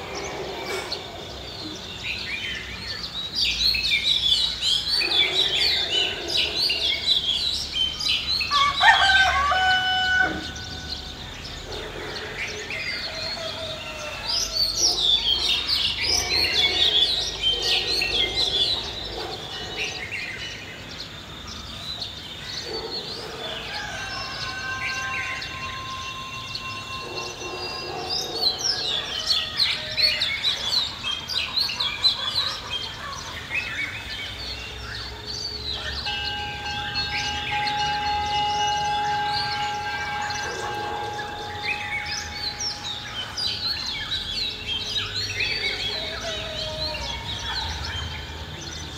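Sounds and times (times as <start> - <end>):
small birds chirping: 0.0 - 48.9
rooster crowing: 8.3 - 11.6, 12.7 - 15.1, 23.3 - 30.8, 35.7 - 47.9.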